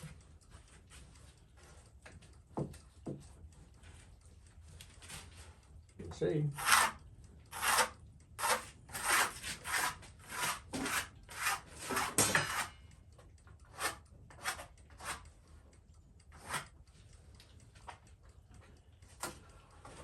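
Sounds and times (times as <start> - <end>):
hand tool scraping wood: 6.5 - 12.7, 13.7 - 15.2, 16.4 - 16.6.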